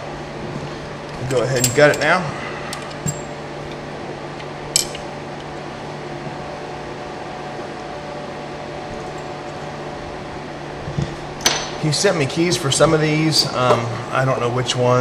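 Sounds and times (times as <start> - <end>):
low hum with hiss: 0.0 - 15.0.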